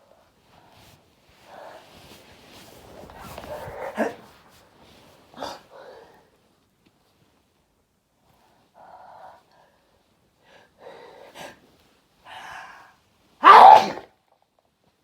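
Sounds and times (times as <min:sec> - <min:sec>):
person sneezing loudly: 0:13.4 - 0:14.1.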